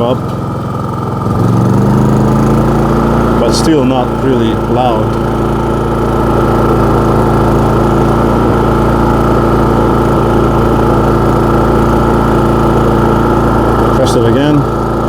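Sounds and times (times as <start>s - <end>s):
generator engine running: 0.0s - 15.0s.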